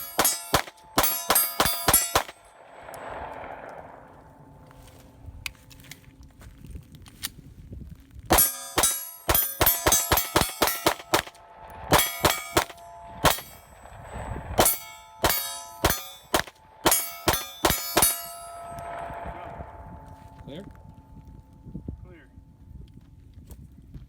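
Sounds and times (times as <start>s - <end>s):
pistol shots: 0.0s - 2.5s, 8.3s - 13.6s, 14.6s - 18.5s
steel target clanging: 0.0s - 2.5s, 8.3s - 19.2s.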